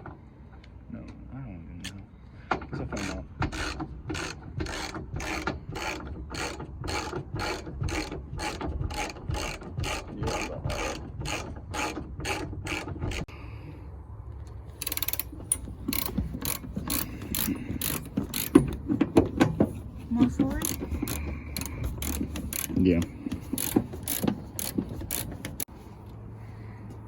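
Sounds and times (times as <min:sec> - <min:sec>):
socket ratchet clicking: 0:14.8 - 0:19.4, 0:20.6 - 0:25.7.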